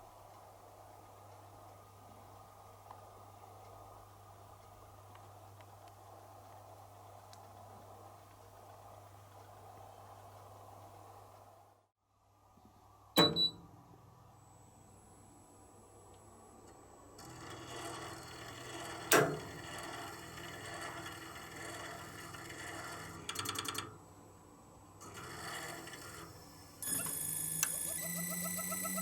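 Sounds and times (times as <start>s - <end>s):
compressor high whine: 25.0s - 29.0s
pulsing tone: 26.8s - 29.0s.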